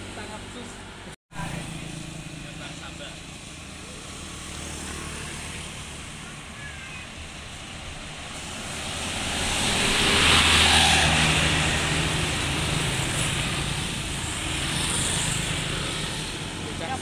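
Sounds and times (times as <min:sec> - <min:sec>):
low engine drone: 0:00.0 - 0:04.4
vehicle passing close by: 0:01.4 - 0:06.6, 0:07.2 - 0:17.0.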